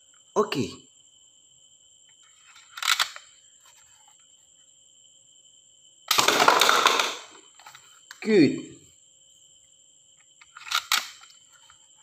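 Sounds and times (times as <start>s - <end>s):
plastic clack of toy gun: 6.1s - 7.3s.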